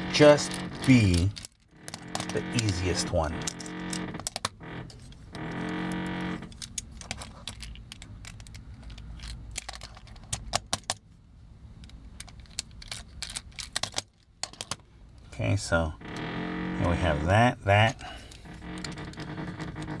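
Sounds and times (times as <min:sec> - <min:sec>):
small clicks of toy parts: 0:06.6 - 0:11.0, 0:11.8 - 0:14.8.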